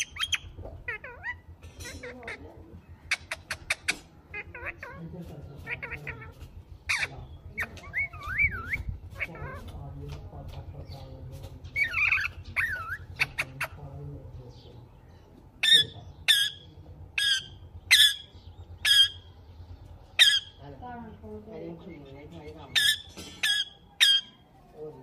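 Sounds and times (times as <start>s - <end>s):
parakeet whistling calls: 0.0s - 1.5s, 6.9s - 9.6s, 15.6s - 19.3s, 22.7s - 24.4s
steady low hum: 0.0s - 24.7s.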